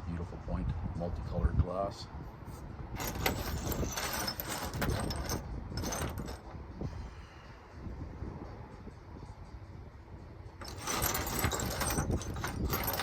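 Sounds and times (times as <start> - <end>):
glass pieces clinking: 3.0 - 6.4, 10.6 - 13.0.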